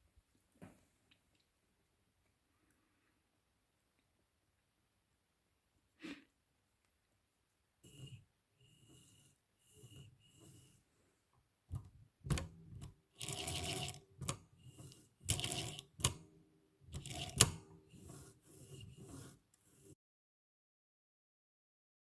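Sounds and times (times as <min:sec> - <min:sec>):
typewriter clacking: 0:12.3 - 0:16.2, 0:17.0 - 0:19.4
typewriter rattling: 0:12.3 - 0:16.2, 0:17.0 - 0:19.9.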